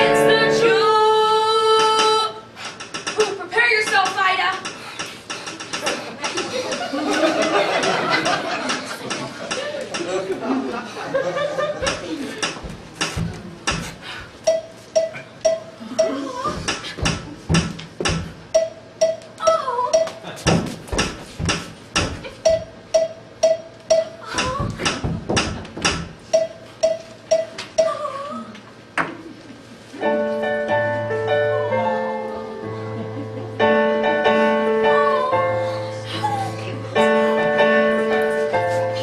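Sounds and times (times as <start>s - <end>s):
held keyboard chords: 0.0s - 1.1s, 30.0s - 39.0s
sharp knocking hits: 16.6s - 19.2s, 20.5s - 23.6s, 24.4s - 27.0s.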